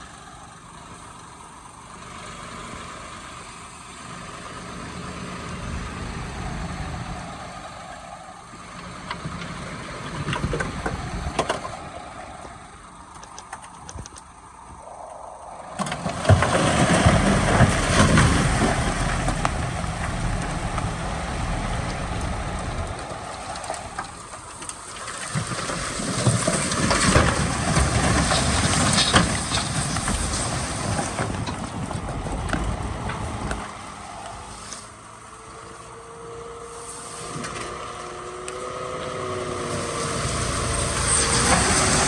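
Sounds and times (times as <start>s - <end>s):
heavy diesel machinery working: 0.0s - 42.0s
scattered knocks and crackle: 15.8s - 34.0s.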